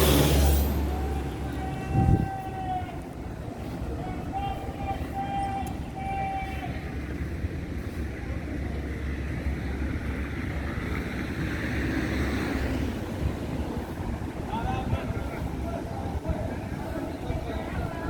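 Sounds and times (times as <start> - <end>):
vehicle passing: 0.0 - 2.2, 7.1 - 17.3
city street traffic: 0.0 - 18.0
heavy engine running: 0.0 - 18.0.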